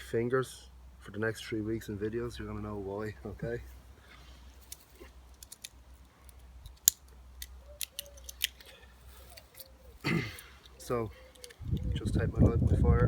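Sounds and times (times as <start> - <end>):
clicks of marker pieces: 4.6 - 9.8, 10.4 - 11.6.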